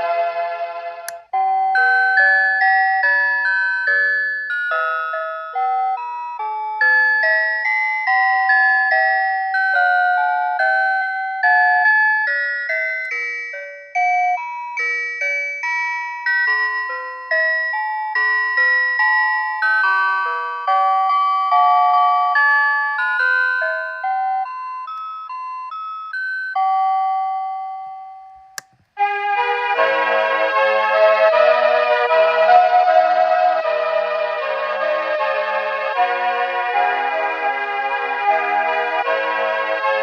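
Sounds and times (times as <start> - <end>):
alarm clock melody: 1.1 - 28.7
click: 28.3 - 28.9.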